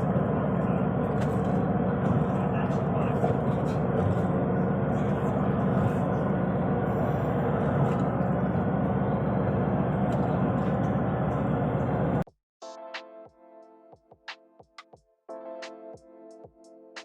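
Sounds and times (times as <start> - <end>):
boat engine running: 0.0 - 12.3.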